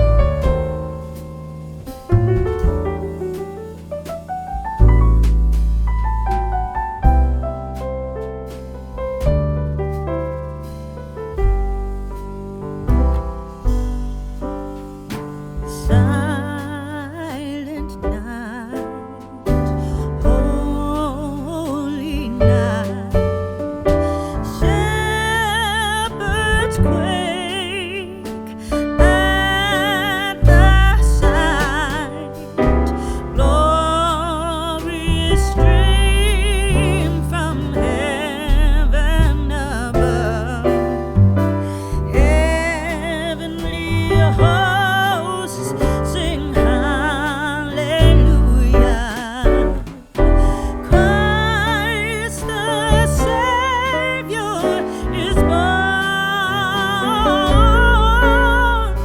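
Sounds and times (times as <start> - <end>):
strong bass line: 0.0 - 59.0
person singing with vibrato: 15.6 - 59.0.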